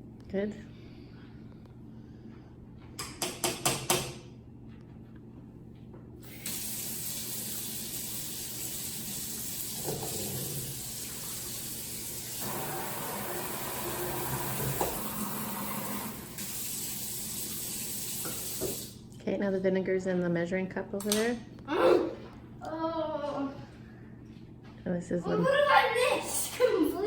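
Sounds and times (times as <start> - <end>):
water running from a tap: 6.2 - 19.0.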